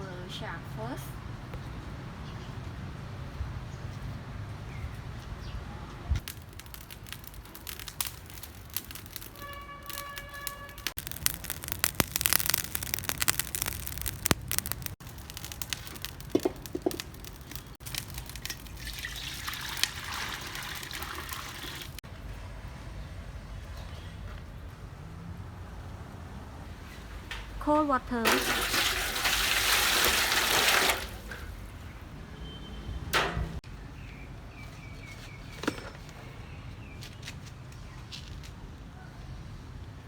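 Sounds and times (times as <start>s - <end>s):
water splashing and pouring: 6.2s - 22.0s, 28.3s - 31.7s.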